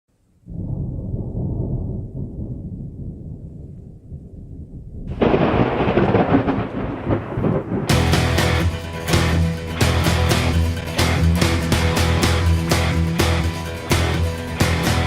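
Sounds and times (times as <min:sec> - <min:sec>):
thunder rumbling: 0:00.4 - 0:09.8
sharp peal of thunder: 0:00.5 - 0:08.3.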